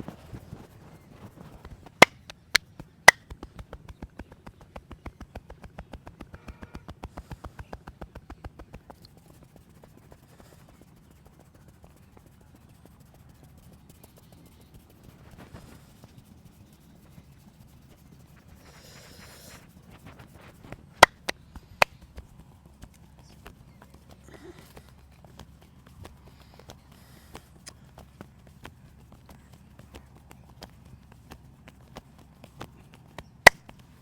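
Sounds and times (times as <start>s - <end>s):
hand tapping massage: 0.0s - 34.0s
hands rubbing on skin: 0.0s - 34.0s
loud sharp snaps: 33.2s - 33.8s.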